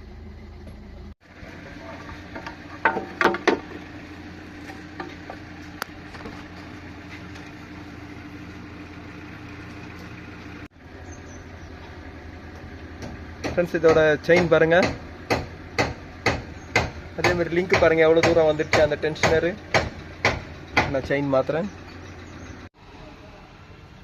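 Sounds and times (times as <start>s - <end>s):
car engine running: 0.0s - 22.7s
sharp engine knocks: 1.9s - 4.0s, 11.7s - 22.0s.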